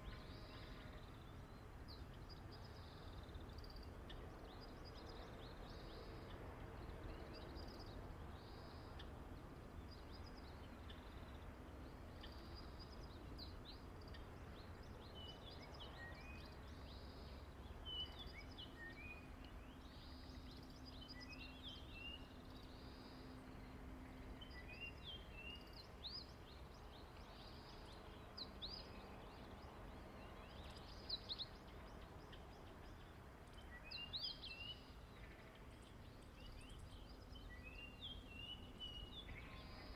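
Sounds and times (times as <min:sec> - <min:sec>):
low steady rumble: 0:00.0 - 0:39.9
small birds chirping: 0:09.8 - 0:39.9.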